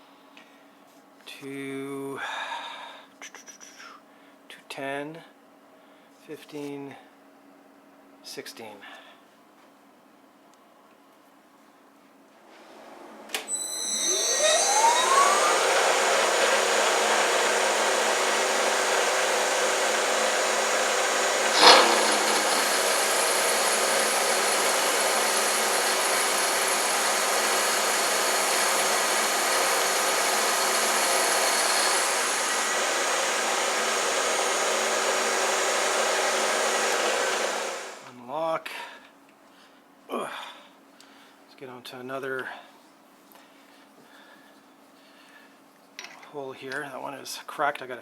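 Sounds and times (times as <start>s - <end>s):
brief loud noise: 13.5s - 16.6s, 21.5s - 26.4s
milling machine spindle whining: 13.5s - 38.0s.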